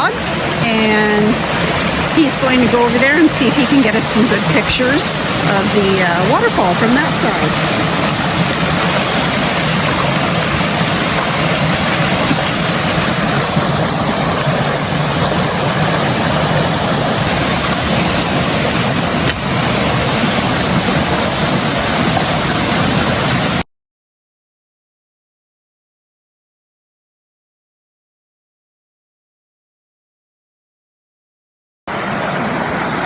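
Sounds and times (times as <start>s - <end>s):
waterfall roaring: 0.0s - 23.6s, 31.9s - 33.0s.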